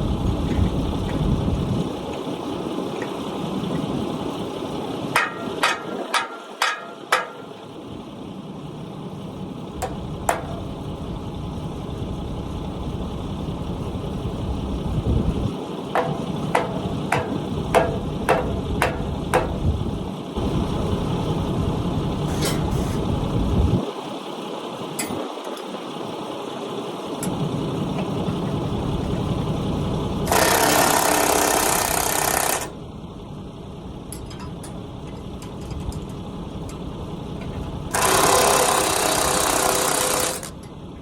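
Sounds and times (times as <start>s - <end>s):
steady low rumble: 0.0s - 31.9s, 32.7s - 41.0s
hammer blows on steel: 16.0s - 19.7s.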